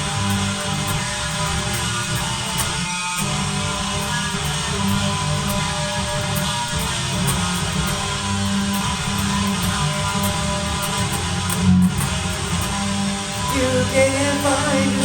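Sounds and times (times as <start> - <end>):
distorted electric guitar riff: 0.0 - 15.0.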